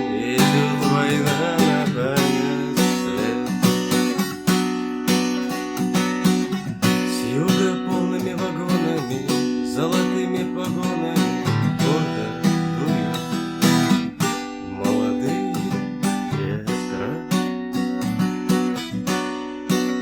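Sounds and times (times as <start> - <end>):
acoustic guitar strumming: 0.0 - 20.0.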